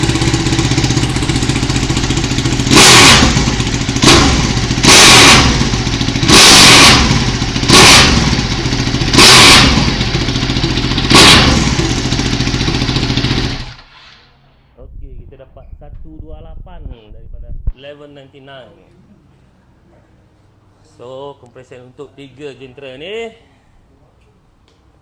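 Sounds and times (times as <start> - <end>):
motorcycle engine revving: 0.0 - 14.2.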